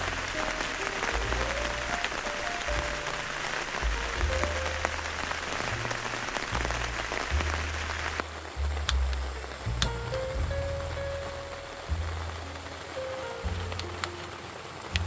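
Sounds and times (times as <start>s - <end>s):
background music with bass line: 0.0s - 15.0s
rain hissing: 0.0s - 15.0s.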